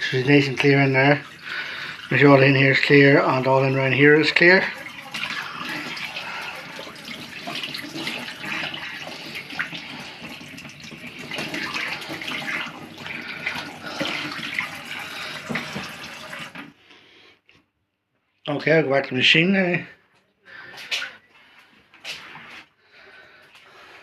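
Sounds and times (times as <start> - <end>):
tap water splashing on filter: 4.6 - 16.7.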